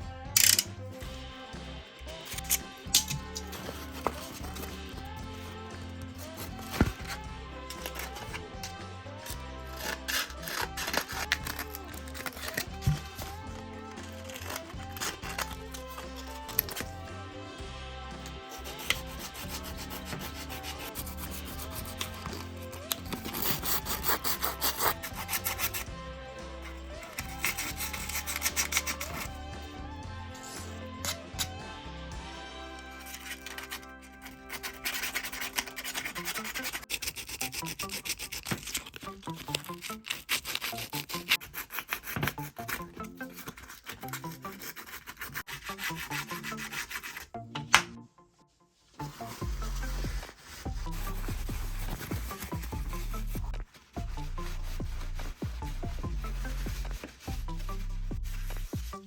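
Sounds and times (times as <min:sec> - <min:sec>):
background music: 0:00.0 - 0:59.0
rapid scraping strokes: 0:02.0 - 0:17.1, 0:18.2 - 0:29.6, 0:32.9 - 0:39.0, 0:49.0 - 0:59.0
hand tool rasping on workpiece: 0:06.2 - 0:13.4, 0:18.5 - 0:25.9, 0:27.0 - 0:29.3, 0:33.3 - 0:47.3.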